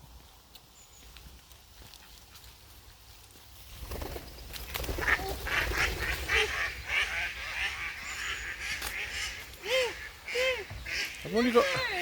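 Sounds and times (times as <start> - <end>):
ducks quacking and honking: 5.0 - 12.0.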